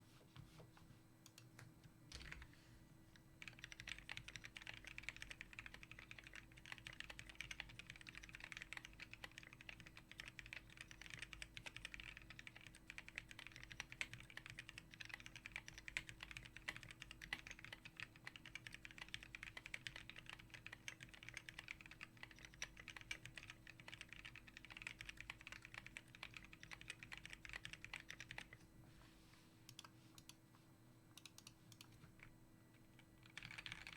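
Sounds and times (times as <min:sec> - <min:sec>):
mechanical keyboard typing: 0:02.1 - 0:02.5, 0:03.4 - 0:28.6, 0:33.0 - 0:33.9.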